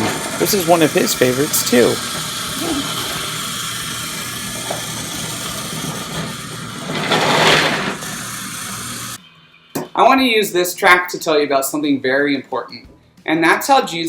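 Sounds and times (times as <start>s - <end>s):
toy train electric motor: 0.0s - 9.2s.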